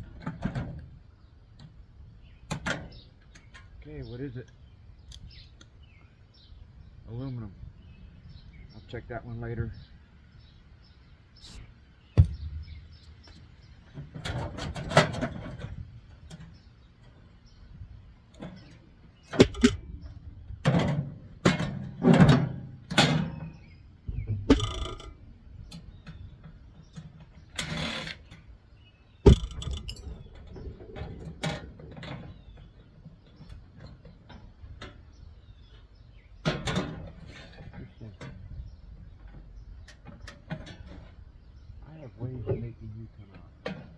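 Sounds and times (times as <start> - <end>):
sharp knocks: 12.2 - 12.8, 19.4 - 19.8, 24.1 - 25.1, 29.3 - 30.0
sheet metal clanking and scraping: 13.9 - 16.6, 18.4 - 23.6, 24.4 - 25.2.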